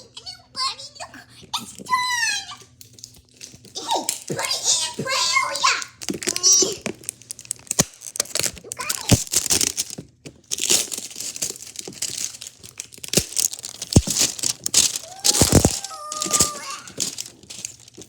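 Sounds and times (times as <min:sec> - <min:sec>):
plastic packaging crinkling and tearing: 0:02.7 - 0:18.0.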